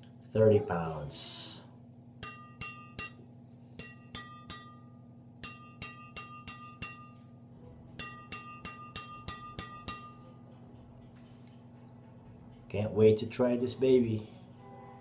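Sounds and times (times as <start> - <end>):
racket strings pinging: 2.2 - 10.5.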